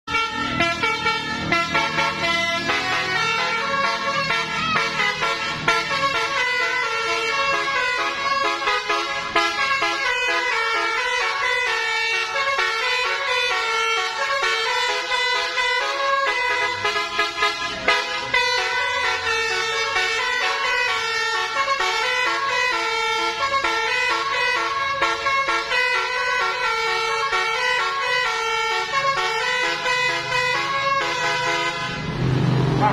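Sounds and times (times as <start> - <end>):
multi-tone vehicle horn tune: 0.1 - 32.9.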